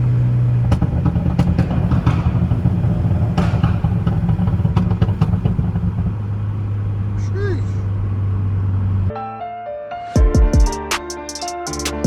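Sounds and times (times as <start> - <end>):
car engine running: 0.0 - 9.1
exhaust pops and crackles: 0.3 - 6.3.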